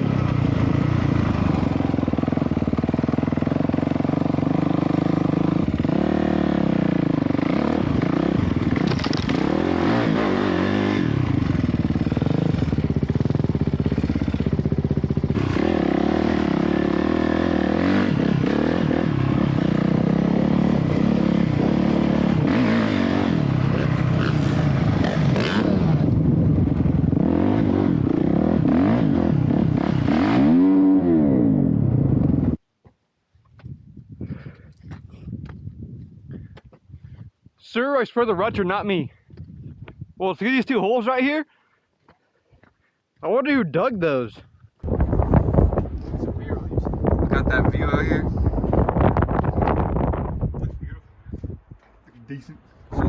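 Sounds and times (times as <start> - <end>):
dirt bike engine revving: 0.0 - 32.6.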